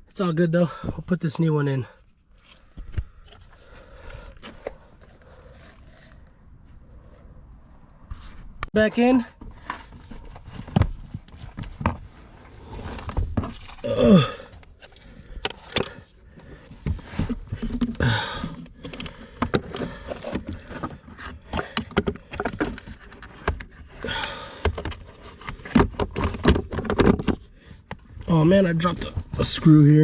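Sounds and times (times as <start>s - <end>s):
plastic parts clicking and scraping: 9.4s - 29.5s
short falling groan: 13.8s - 14.5s.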